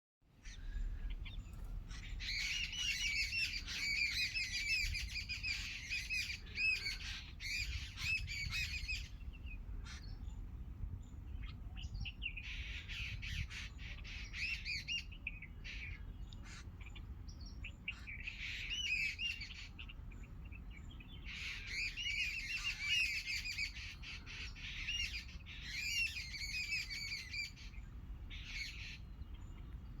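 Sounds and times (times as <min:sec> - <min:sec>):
birds chirping and squawking: 0:00.4 - 0:10.5, 0:11.4 - 0:29.8
low steady rumble: 0:00.4 - 0:13.2.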